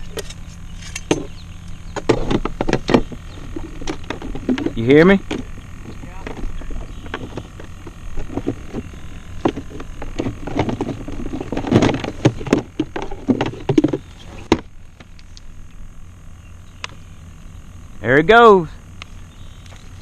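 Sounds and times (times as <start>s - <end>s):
kayak gear knocking and clattering: 2.0s - 15.1s.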